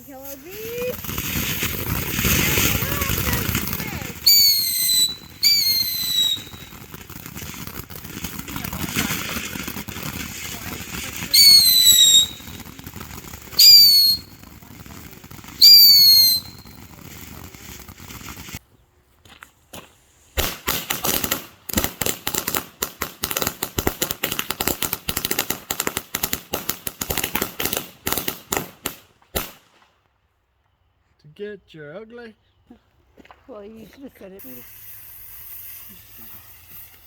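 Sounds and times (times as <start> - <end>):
whistling fireworks: 0.0 - 18.6, 20.4 - 29.9, 34.4 - 37.0
firecracker bangs: 0.5 - 18.6, 20.4 - 29.9.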